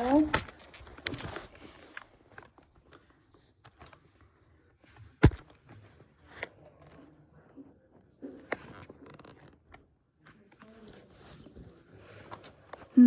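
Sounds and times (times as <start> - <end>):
plush toys being handled: 0.0 - 7.1
soft rustles and clicks: 0.0 - 7.1.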